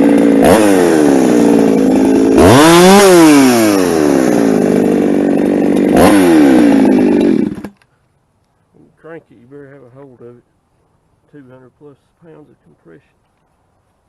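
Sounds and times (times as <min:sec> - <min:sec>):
chainsaw running and revving: 0:00.0 - 0:07.8.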